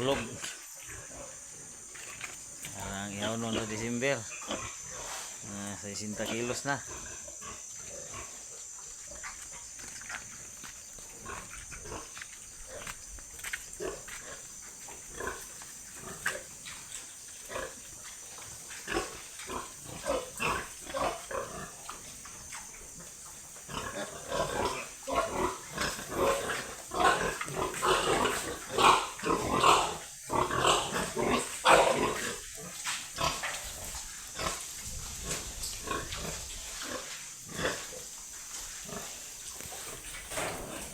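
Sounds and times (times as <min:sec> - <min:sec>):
pigs grunting: 0:00.0 - 0:13.2, 0:13.8 - 0:40.9
steady high hiss: 0:00.0 - 0:40.9.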